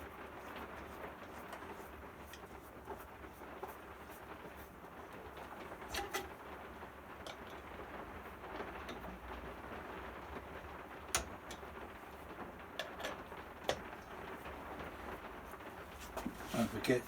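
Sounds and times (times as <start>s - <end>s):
metallic clicks and taps: 11.1s - 11.7s, 12.8s - 13.9s.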